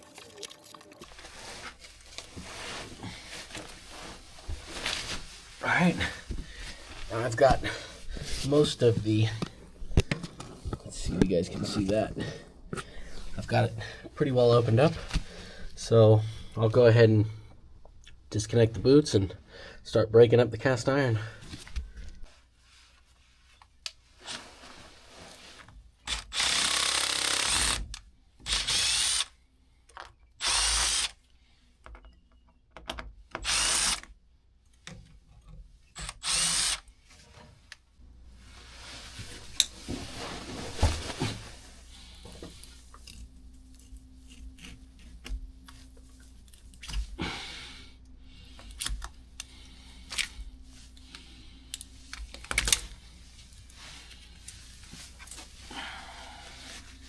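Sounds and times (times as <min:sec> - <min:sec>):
power drill bursts: 0:26.1 - 0:27.8, 0:28.4 - 0:29.3, 0:30.4 - 0:31.2, 0:33.4 - 0:34.0, 0:36.0 - 0:36.8.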